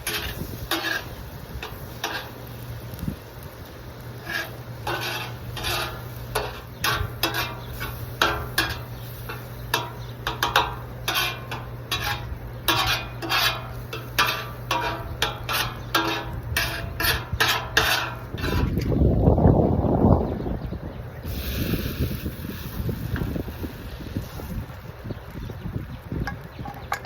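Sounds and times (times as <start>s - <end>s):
metal spatula scraping griddle: 0.0s - 3.1s, 4.0s - 19.0s
steady low hum: 0.0s - 27.0s.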